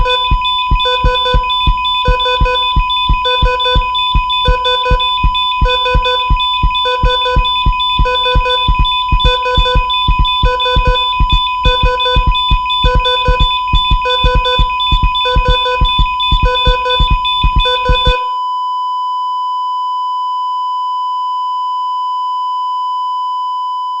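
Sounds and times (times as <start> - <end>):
steady monitor tone: 0.0 - 18.3
heart monitor beeps: 0.0 - 19.9
flatline tone: 0.0 - 21.2.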